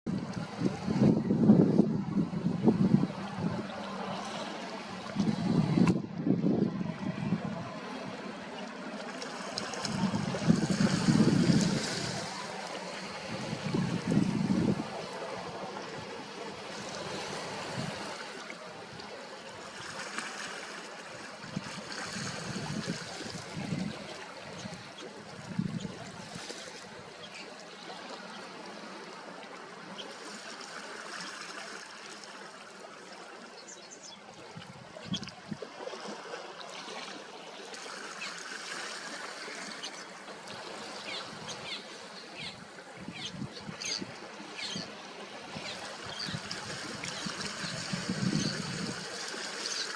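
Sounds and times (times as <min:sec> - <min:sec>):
sea water lapping: 0:00.1 - 0:49.9.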